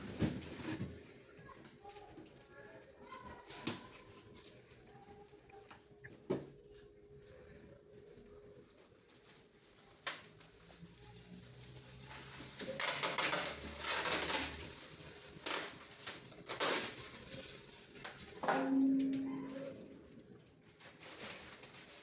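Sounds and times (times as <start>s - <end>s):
packaging rustling and scraping: 0.0s - 1.2s, 8.6s - 18.4s, 19.4s - 22.0s.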